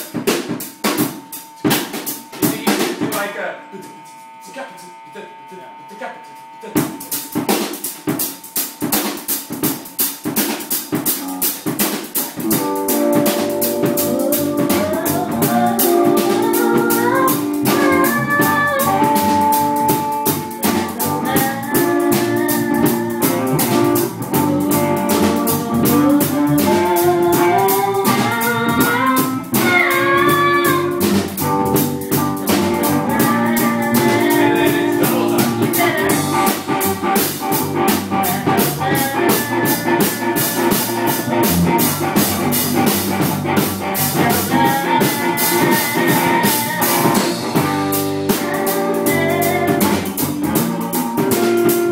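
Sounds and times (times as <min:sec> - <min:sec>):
drum kit pattern: 0:00.0 - 0:51.9
guitar chords and melody: 0:11.2 - 0:51.9.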